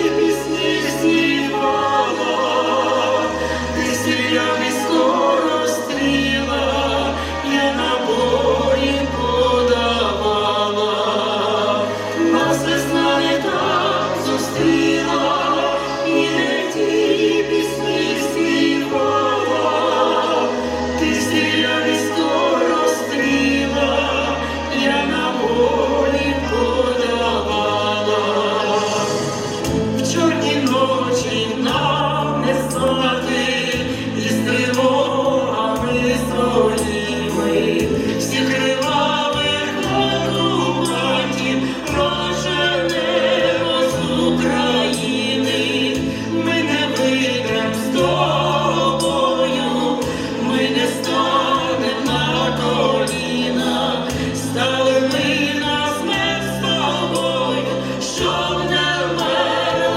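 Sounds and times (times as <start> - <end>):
band accompaniment: 0.0 - 59.9
drums: 24.4 - 59.9.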